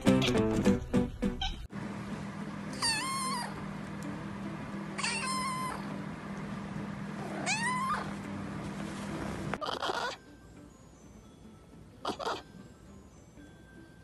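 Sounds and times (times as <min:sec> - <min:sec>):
steady low hum: 0:01.7 - 0:09.6
cat meowing: 0:02.8 - 0:03.6, 0:05.0 - 0:05.9, 0:07.2 - 0:08.1, 0:09.6 - 0:10.2, 0:12.1 - 0:12.5.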